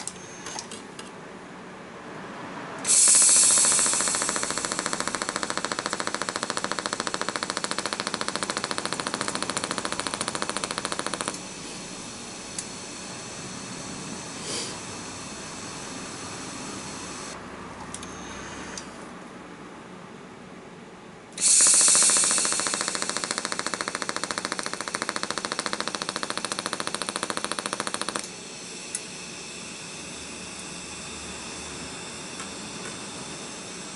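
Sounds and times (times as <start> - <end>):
machine rattling buzz: 2.8 - 17.4, 21.4 - 33.9
steady hiss: 2.9 - 17.4, 21.4 - 33.9.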